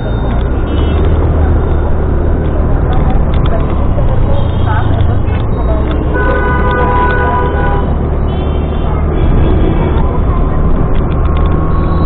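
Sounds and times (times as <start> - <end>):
motorcycle engine rumble: 0.0 - 12.0
vehicle horn: 0.6 - 1.1, 4.3 - 10.1
wind noise: 8.8 - 12.0.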